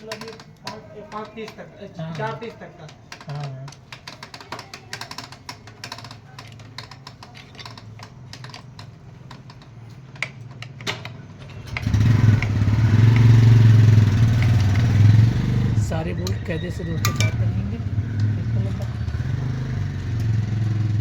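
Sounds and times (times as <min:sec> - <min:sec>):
motorcycle engine running: 0:11.6 - 0:16.0, 0:17.0 - 0:21.0.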